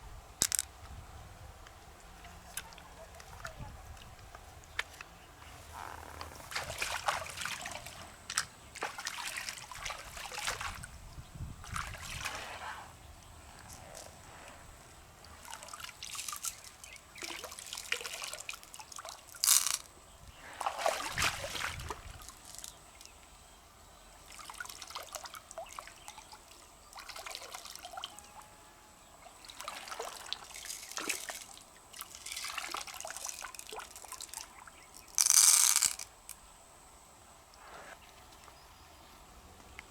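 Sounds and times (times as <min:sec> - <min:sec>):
water trickling and dripping: 0:13.5 - 0:19.9.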